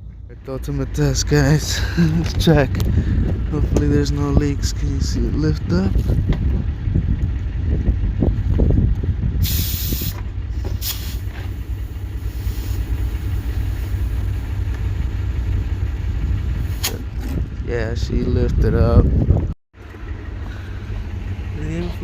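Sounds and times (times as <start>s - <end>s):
steady low rumble: 0.0s - 22.0s
compressed air hissing: 9.4s - 14.4s.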